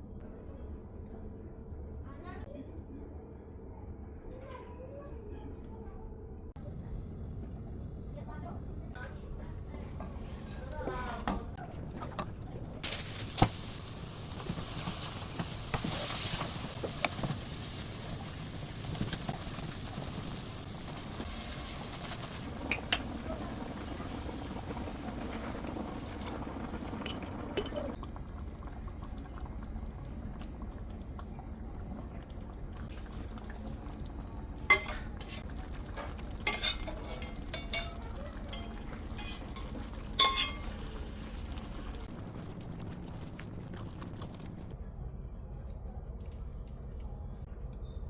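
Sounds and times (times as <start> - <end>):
steady cooking hiss: 8.3 - 44.8
dishes and cutlery clinking: 27.0 - 28.0, 34.7 - 40.8.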